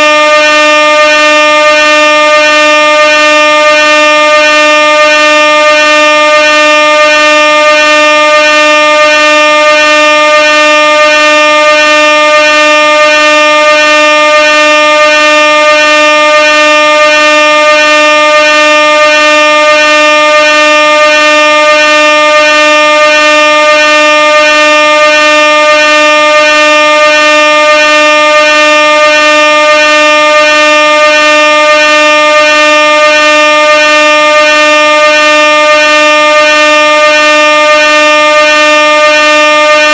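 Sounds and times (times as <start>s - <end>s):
air horn blaring: 0.0s - 39.9s.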